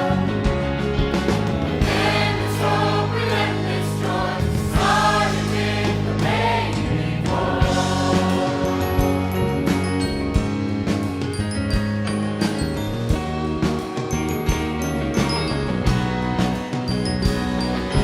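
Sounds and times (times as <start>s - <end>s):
band with bass and drums: 0.0s - 18.0s
vocal group singing in harmony: 1.8s - 9.2s.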